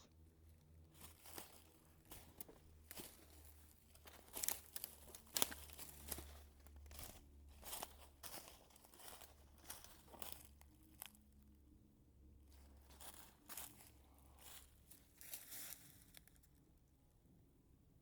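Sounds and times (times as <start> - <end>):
dry leaves crunching underfoot: 1.0 - 11.2, 12.5 - 16.4.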